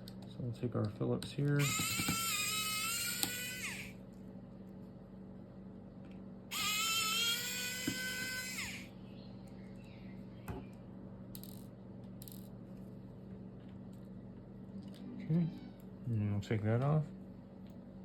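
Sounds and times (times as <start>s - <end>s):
steady low hum: 0.0s - 18.0s
small electric motor whining: 1.6s - 4.0s, 6.5s - 8.9s.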